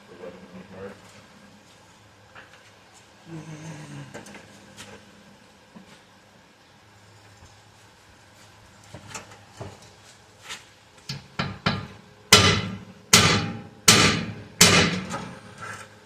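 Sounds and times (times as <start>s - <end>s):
hammer strikes: 11.4s - 15.2s.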